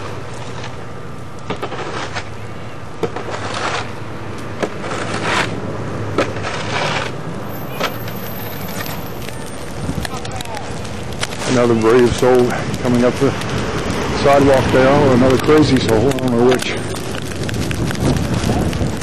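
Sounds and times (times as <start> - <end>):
footsteps crunching in snow: 6.2 - 12.4.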